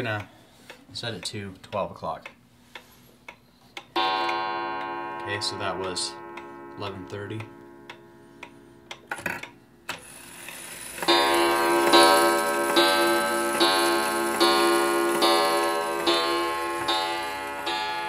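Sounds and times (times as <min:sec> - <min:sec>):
clock mechanism clicks: 0:00.0 - 0:18.0
clock striking coil gong: 0:04.0 - 0:18.0.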